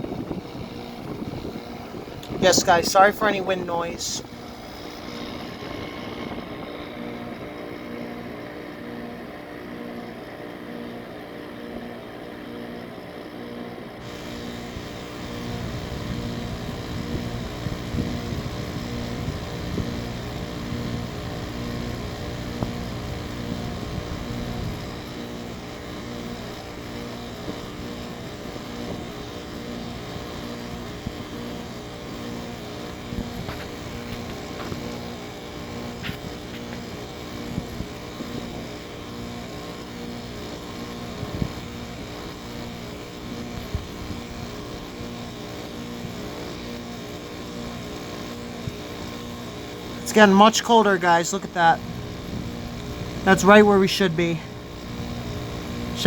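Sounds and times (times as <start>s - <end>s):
wind rumble on microphone: 0.0s - 2.8s, 14.7s - 25.2s, 33.0s - 35.0s, 41.1s - 42.3s
air conditioner running: 0.0s - 56.0s.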